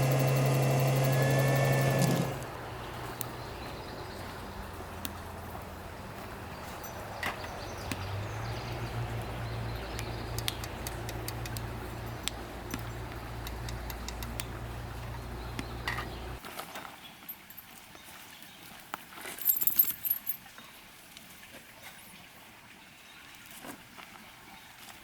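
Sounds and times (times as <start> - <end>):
pickup truck engine running: 0.0 - 6.0, 8.4 - 16.4.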